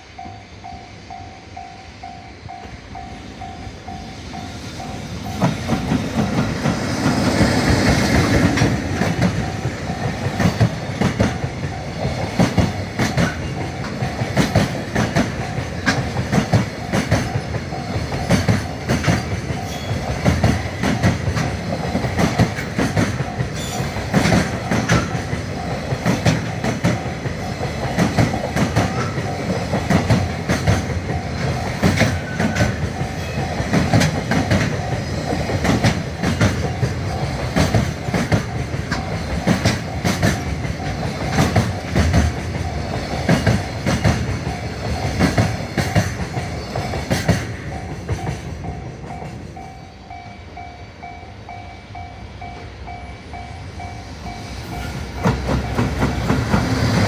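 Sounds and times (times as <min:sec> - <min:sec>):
train wheels clattering over joints: 0:04.8 - 0:49.9, 0:54.2 - 0:57.0
level-crossing bell ringing: 0:47.6 - 0:56.1.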